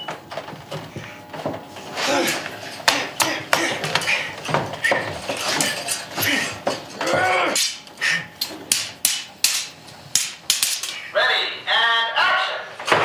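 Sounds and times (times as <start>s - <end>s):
sharp irregular knocks and clacks: 2.9s - 11.0s.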